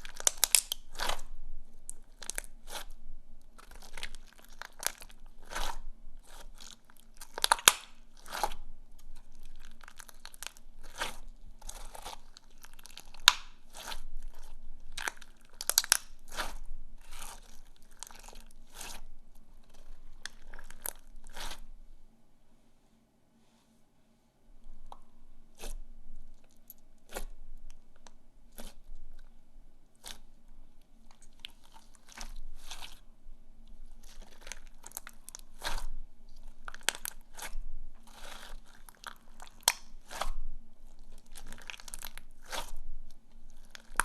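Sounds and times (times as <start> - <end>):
slime crackling and popping: 0.0 - 2.9, 3.5 - 21.7, 33.8 - 44.0.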